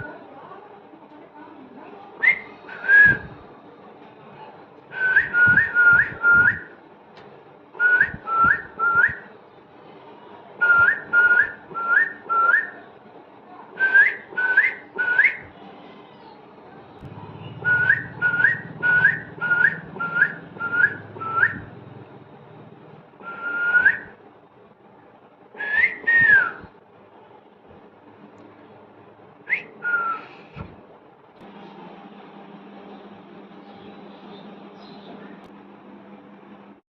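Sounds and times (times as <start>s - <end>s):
parrot whistling: 5.0s - 6.8s, 7.8s - 9.3s, 10.6s - 12.8s, 13.8s - 15.5s, 17.6s - 21.7s, 23.2s - 24.1s, 25.6s - 26.7s, 29.5s - 30.4s.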